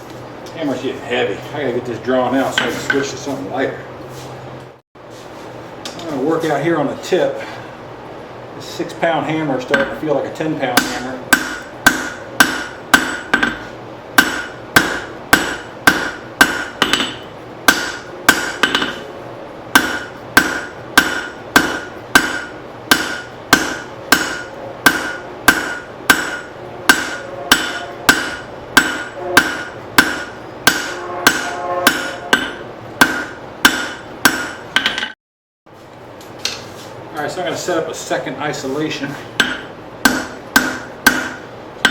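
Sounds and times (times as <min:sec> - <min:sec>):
hammer striking steel on anvil: 0:09.6 - 0:19.1, 0:19.7 - 0:35.2, 0:39.4 - 0:41.9.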